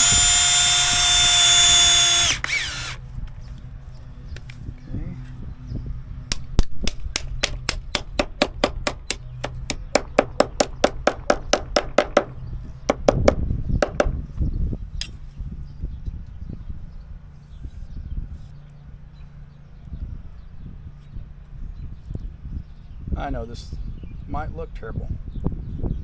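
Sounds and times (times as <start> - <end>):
low rumbling: 0.0 - 16.8
knocks: 7.4 - 14.2.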